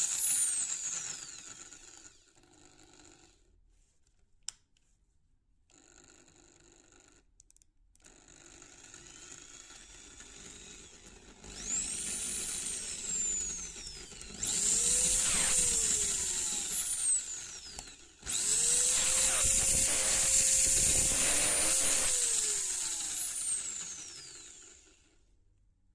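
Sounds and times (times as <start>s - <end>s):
hammer drill whining: 0.0s - 2.3s, 8.9s - 25.2s.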